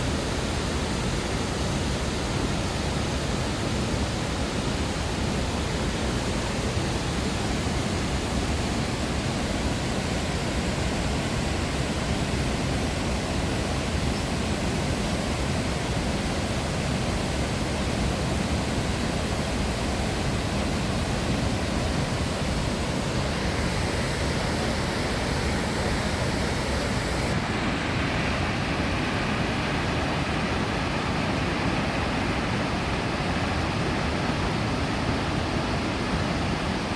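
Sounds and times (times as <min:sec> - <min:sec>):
waterfall roaring: 0:00.0 - 0:36.9.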